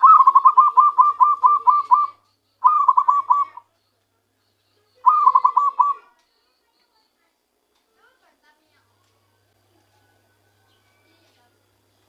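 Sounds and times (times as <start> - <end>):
dove cooing: 0.0 - 3.7, 5.0 - 6.1.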